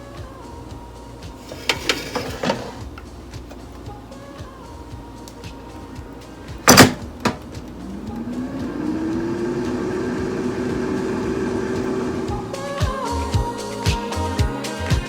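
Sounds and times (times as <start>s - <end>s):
air fryer fan humming: 0.0s - 15.0s
air fryer basket clunk: 1.5s - 2.8s, 6.6s - 7.8s.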